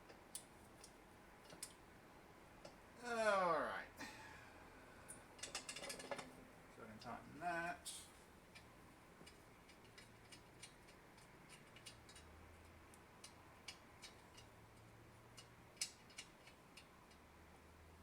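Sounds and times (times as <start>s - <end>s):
wrench clicking on metal: 8.6s - 17.3s.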